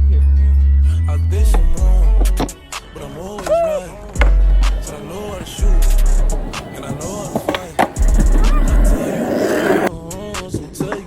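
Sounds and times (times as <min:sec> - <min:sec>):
rapping: 0:00.0 - 0:11.0.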